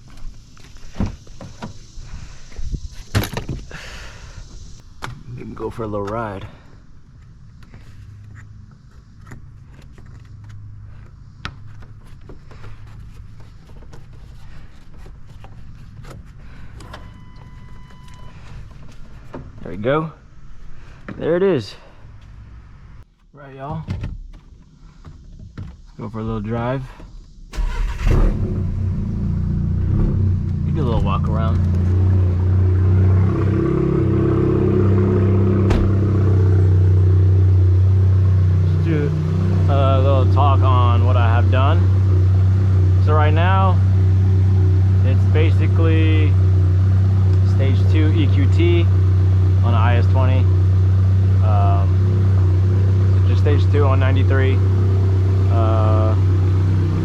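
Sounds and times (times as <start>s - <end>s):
steady low hum: 26.0s - 57.0s
car engine running low: 27.5s - 57.0s.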